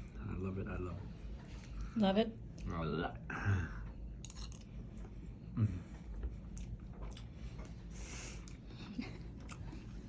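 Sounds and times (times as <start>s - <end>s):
person chewing: 6.1s - 10.0s.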